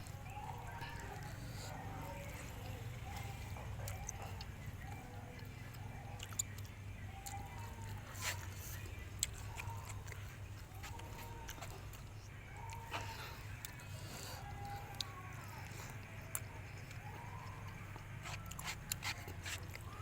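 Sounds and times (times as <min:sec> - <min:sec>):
low steady hum: 0:00.0 - 0:20.0
person chewing crunchy food: 0:00.0 - 0:20.0.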